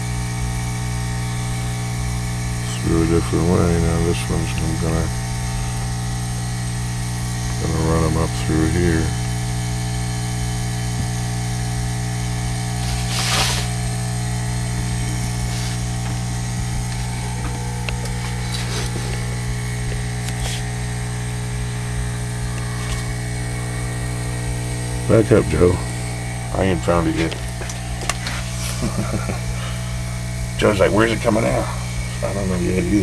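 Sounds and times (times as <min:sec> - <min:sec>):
low electrical hum: 0:00.0 - 0:33.0
brief rustle: 0:12.8 - 0:13.8.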